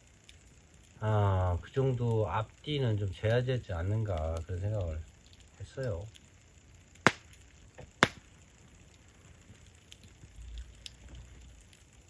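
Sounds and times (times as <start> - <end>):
campfire crackling: 0.0 - 12.0
sharp loud pops: 7.1 - 7.3, 8.0 - 8.2.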